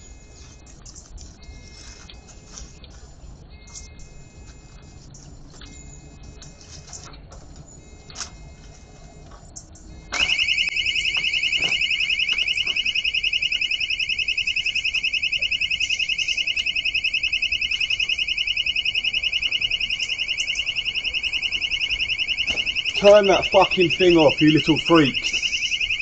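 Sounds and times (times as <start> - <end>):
electronic alarm siren warbling: 9.8 - 26.0.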